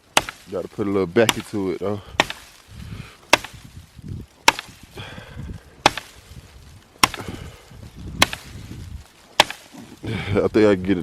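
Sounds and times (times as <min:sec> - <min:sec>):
axe chopping wood: 0:00.0 - 0:00.6, 0:01.2 - 0:02.6, 0:03.3 - 0:03.7, 0:04.4 - 0:04.9, 0:05.8 - 0:06.3, 0:07.0 - 0:07.5, 0:08.1 - 0:10.0.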